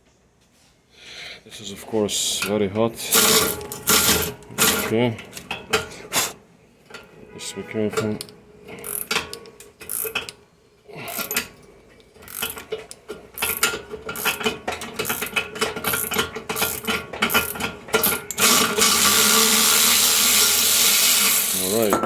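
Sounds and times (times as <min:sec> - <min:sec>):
ratchet wrench clicking: 0:08.8 - 0:10.4, 0:11.1 - 0:11.5, 0:12.2 - 0:19.8.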